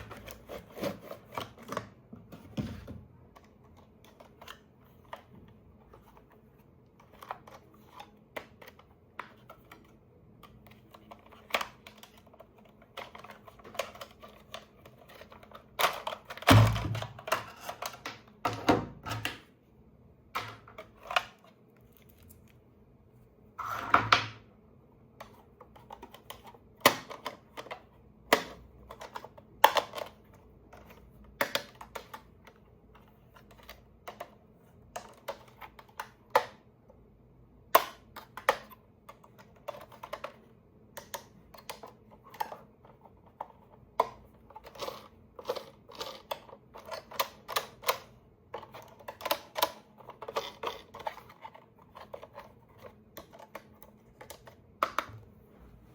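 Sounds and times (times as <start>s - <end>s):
plastic toy parts clicking: 37.8s - 55.1s.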